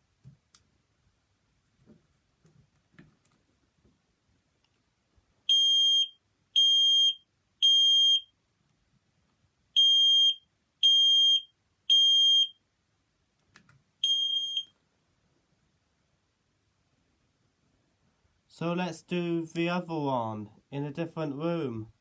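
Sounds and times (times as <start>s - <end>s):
high-pitched smoke alarm beeps: 5.5s - 8.3s, 9.8s - 12.6s, 14.0s - 14.7s.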